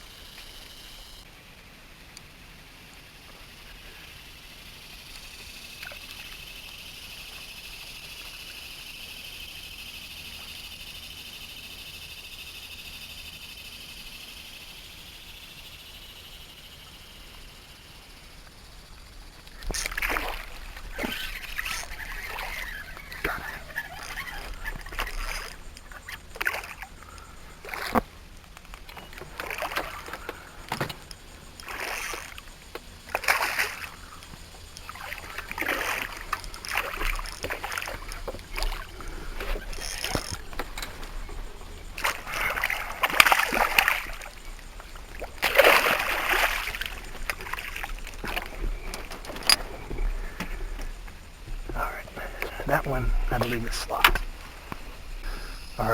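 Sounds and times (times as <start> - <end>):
water splashing: 19.6 - 26.9, 33.1 - 55.9.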